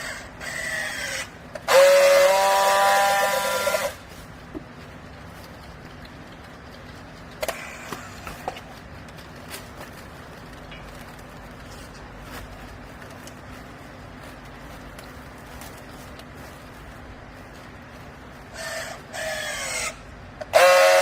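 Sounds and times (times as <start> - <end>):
hydraulic baler humming: 0.0 - 4.8.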